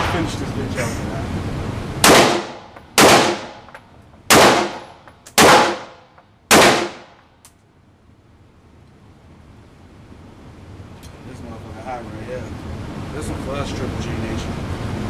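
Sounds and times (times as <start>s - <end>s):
gunshots with echoing tail: 0.0s - 0.4s, 2.0s - 7.2s.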